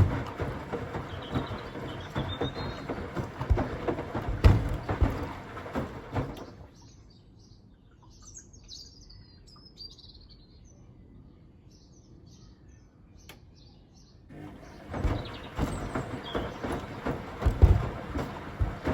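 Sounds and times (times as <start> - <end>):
birds chirping faintly: 0.0 - 18.9
loud rumbling noise: 14.3 - 18.9.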